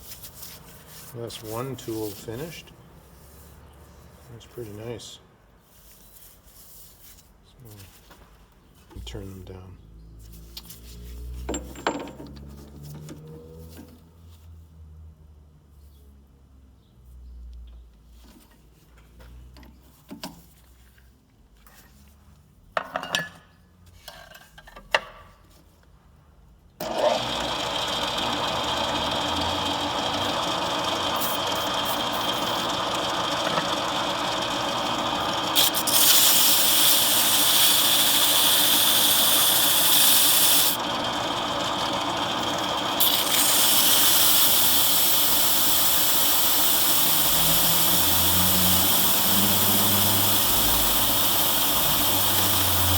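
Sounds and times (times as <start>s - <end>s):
power tool motor running: 26.8s - 52.9s
abrasive hiss of polishing metal: 43.0s - 52.9s.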